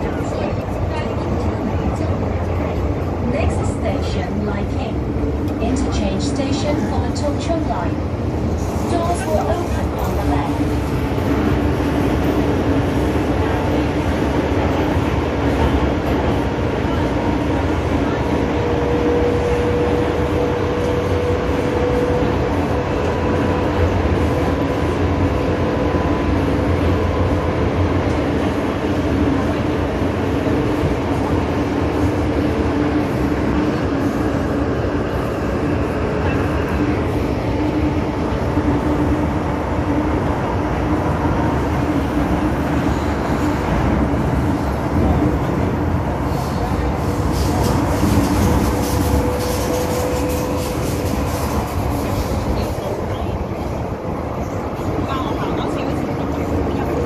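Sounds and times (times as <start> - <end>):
train wheels rumbling: 0.0 - 57.0
low tone from train: 14.6 - 28.1, 46.6 - 53.8.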